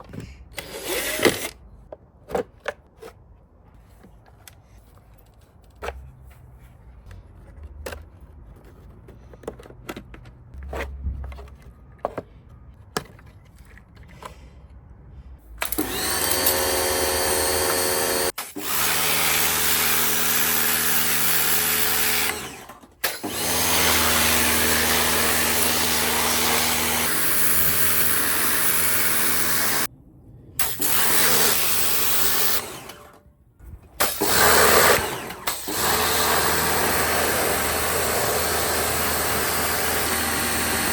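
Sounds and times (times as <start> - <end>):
electric motor whining: 15.6 - 29.9, 34.1 - 40.9.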